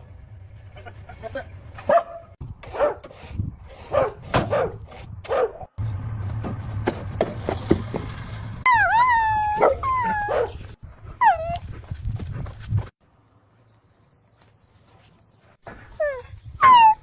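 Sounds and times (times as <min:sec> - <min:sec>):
dog barking: 0:01.9 - 0:03.0, 0:03.9 - 0:05.7, 0:09.6 - 0:10.6
dog whining and whimpering: 0:08.7 - 0:12.3, 0:15.9 - 0:17.0.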